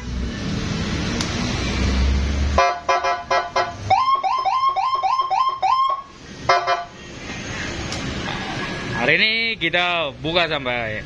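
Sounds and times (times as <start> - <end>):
electronic siren chirps and yelp: 3.9 - 6.1.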